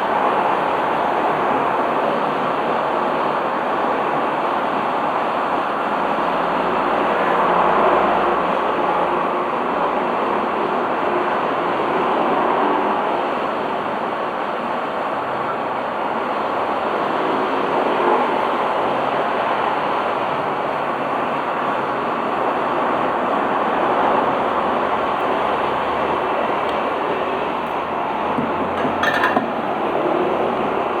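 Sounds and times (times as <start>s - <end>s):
hot-air station blowing air: 0.0s - 31.0s
metallic clink: 28.4s - 29.7s.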